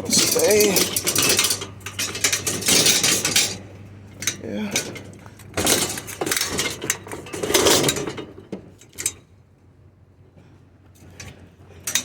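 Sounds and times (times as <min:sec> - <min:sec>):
scrap metal clanking and scraping: 0:00.0 - 0:09.2.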